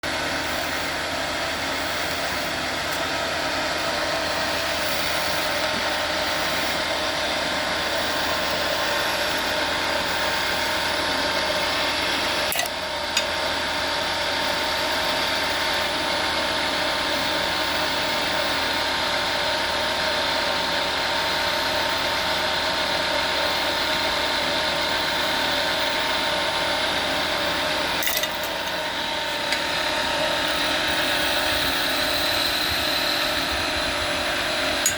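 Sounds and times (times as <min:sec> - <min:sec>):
wood lathe motor hum: 0:00.0 - 0:34.9
turning tool scraping wood: 0:28.0 - 0:32.7.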